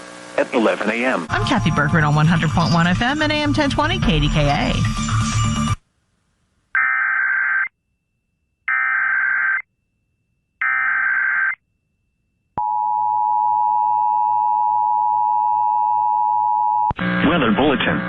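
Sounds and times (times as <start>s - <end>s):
steady two-tone attention signal: 1.3s - 5.3s
digital data tone bursts: 1.3s - 5.8s.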